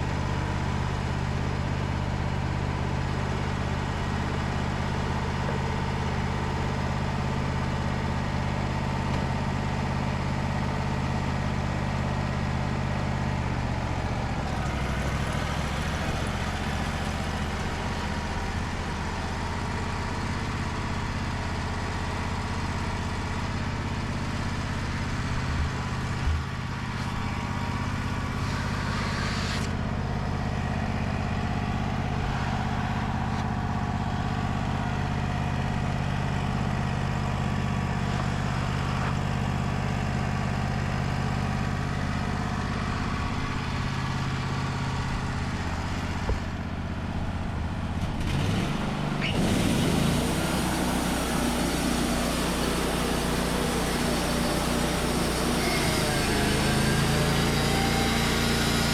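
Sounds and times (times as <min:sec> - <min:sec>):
band sawmill engine running: 0:00.0 - 0:58.9.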